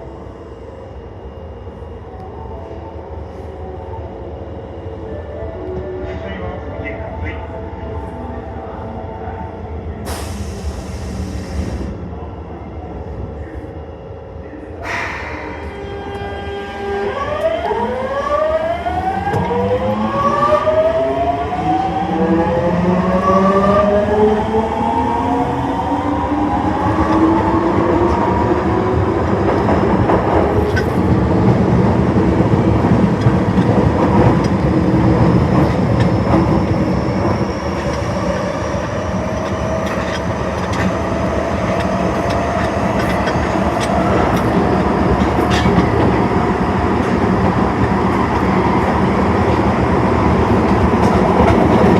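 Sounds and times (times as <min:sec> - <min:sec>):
subway motor whine: 0:00.0 - 0:51.9
wheels rumbling on rail: 0:14.5 - 0:51.9.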